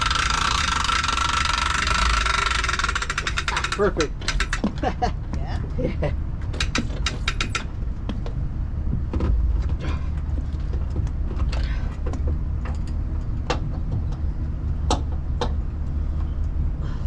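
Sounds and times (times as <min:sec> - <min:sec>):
sharp clicks and knocks: 0:00.0 - 0:04.9, 0:06.4 - 0:09.8.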